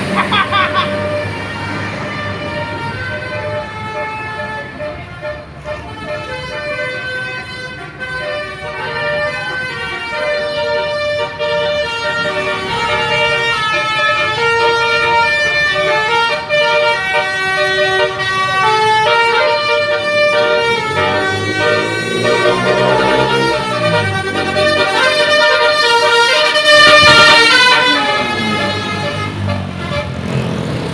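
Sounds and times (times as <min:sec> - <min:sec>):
multi-tone bus horn tune: 0:00.0 - 0:30.6
engine sweeping in pitch: 0:20.0 - 0:30.9.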